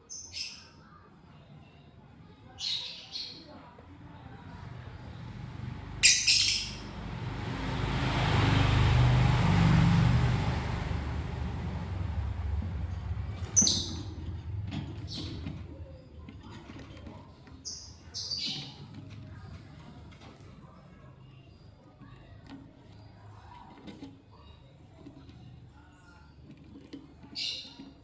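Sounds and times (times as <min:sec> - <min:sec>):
birds high chirps: 0:00.0 - 0:08.4, 0:10.5 - 0:23.6, 0:24.3 - 0:28.0
vehicle passing: 0:04.0 - 0:16.8.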